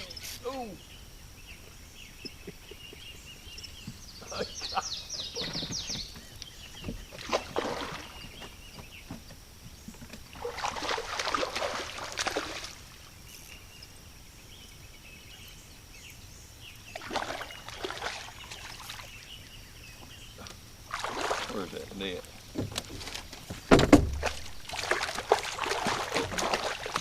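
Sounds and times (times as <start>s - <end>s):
fish splashing in water: 7.1s - 8.4s, 10.3s - 13.1s, 16.9s - 19.2s, 20.8s - 27.0s.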